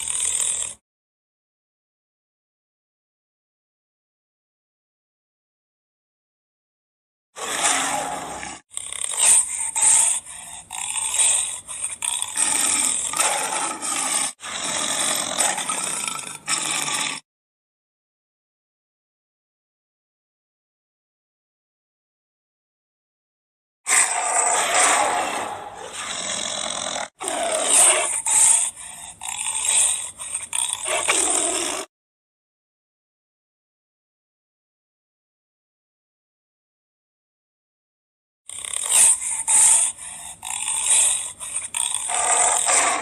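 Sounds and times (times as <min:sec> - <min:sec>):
big cat growls and roars: 0:00.0 - 0:00.8, 0:07.4 - 0:17.3, 0:23.9 - 0:31.9, 0:38.5 - 0:43.0.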